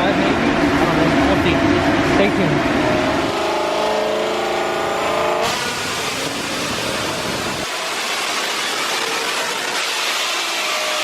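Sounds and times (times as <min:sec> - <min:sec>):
steady rushing noise: 0:05.4 - 0:09.7.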